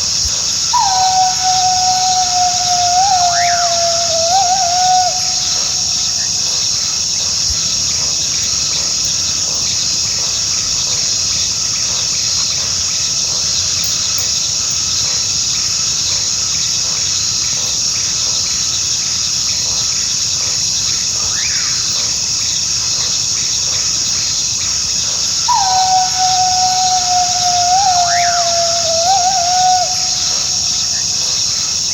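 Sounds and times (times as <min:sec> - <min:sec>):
crickets chirping: 0:00.0 - 0:31.9
coyote howling: 0:00.7 - 0:05.8, 0:25.4 - 0:30.9.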